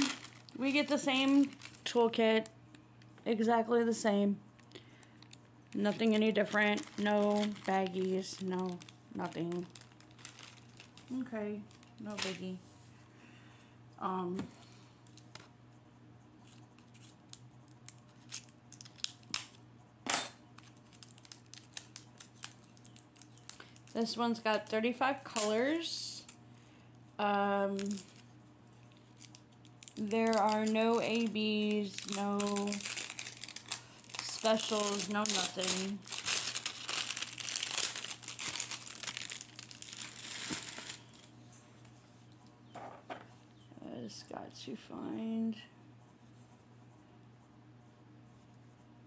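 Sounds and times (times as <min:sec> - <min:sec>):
plastic packets rustling: 0:00.0 - 0:02.5, 0:04.6 - 0:12.6, 0:16.4 - 0:19.6, 0:20.6 - 0:26.4, 0:27.8 - 0:41.3.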